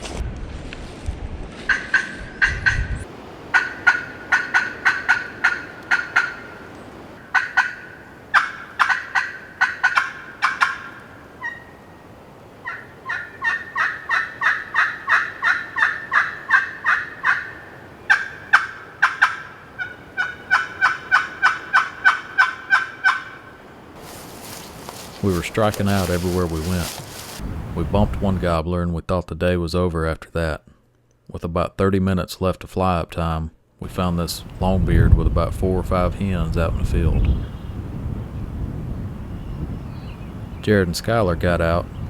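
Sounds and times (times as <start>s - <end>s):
turkey yelping: 1.7s - 2.8s, 3.5s - 12.0s, 12.6s - 27.4s.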